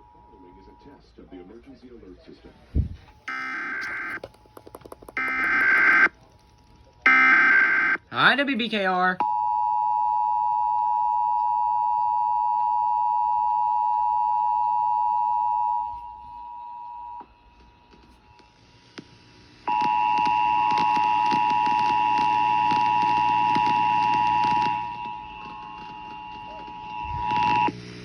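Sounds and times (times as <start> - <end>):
two-tone alert signal: 3.3 - 4.2, 5.2 - 6.1
hiss and crackle: 17.5 - 28.0.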